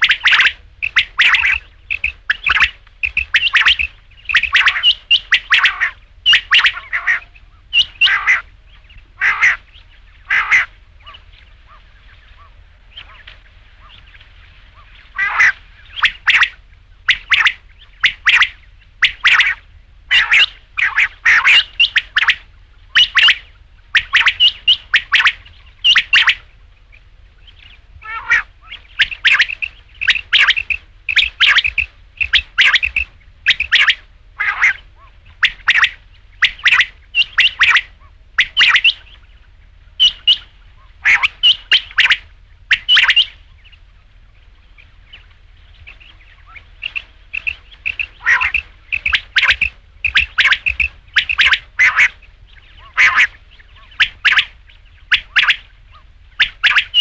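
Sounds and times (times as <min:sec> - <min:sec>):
quail calling: 0:00.0 - 0:57.0.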